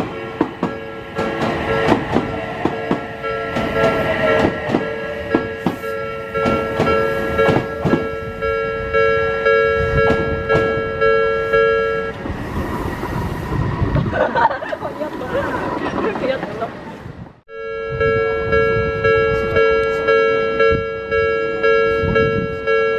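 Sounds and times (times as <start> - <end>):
train wheels clacking over rail joints: 0.0 - 8.1
level crossing warning bell: 0.0 - 12.2, 17.5 - 22.9.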